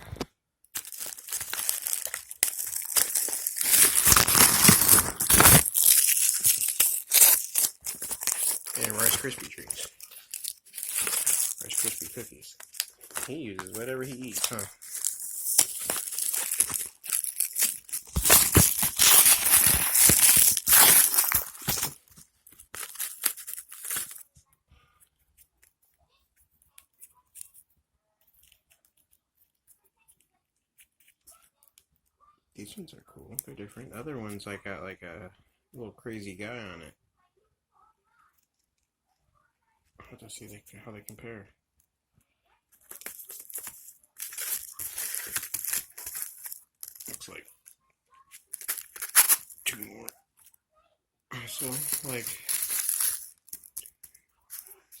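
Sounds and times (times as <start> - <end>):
packaging crinkling and rustling: 0.0 - 24.3, 42.8 - 47.4, 48.3 - 50.1, 51.5 - 55.0.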